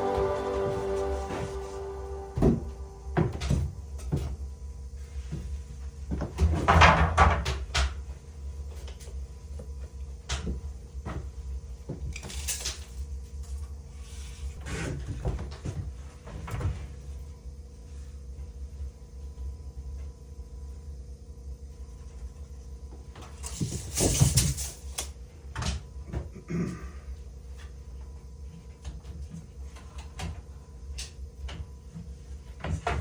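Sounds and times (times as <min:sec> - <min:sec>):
steady low rumble: 0:00.0 - 0:03.4.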